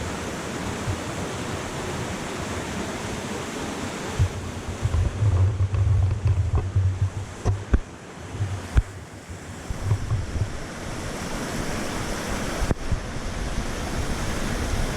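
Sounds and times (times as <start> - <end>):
waterfall rushing water: 0.0 - 5.0, 7.6 - 14.9
dull knocks: 4.2 - 9.0, 9.7 - 10.6.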